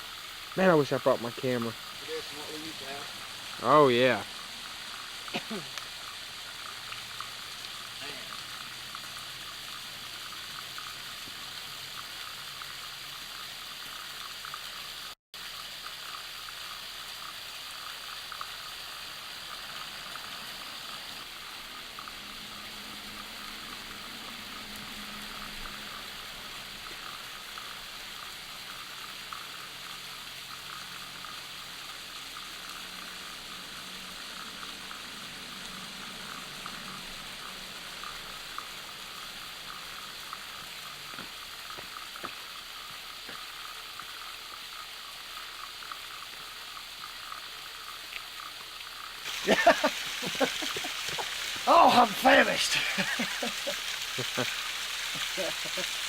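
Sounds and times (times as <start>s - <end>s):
waterfall rushing: 0.6s - 5.7s, 49.3s - 56.0s.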